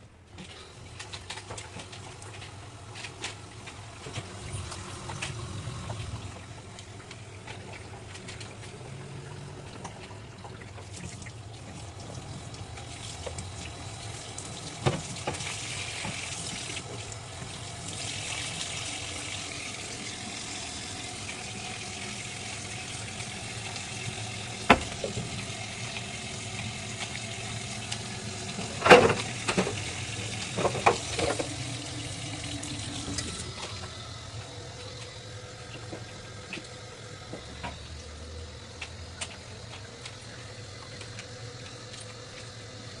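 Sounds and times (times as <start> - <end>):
water running in a sink: 0.0 - 43.0
items clattering in sink: 24.5 - 37.9.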